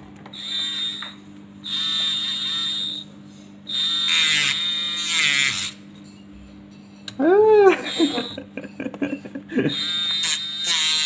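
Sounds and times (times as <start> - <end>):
small electric grinder whining: 0.3 - 5.8, 7.7 - 8.5, 9.6 - 11.0.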